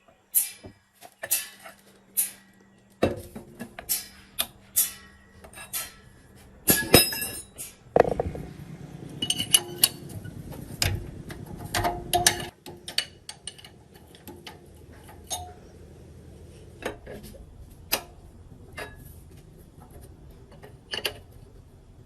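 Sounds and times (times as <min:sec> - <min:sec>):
metal tools clinking: 0:06.7 - 0:08.5, 0:09.1 - 0:10.4.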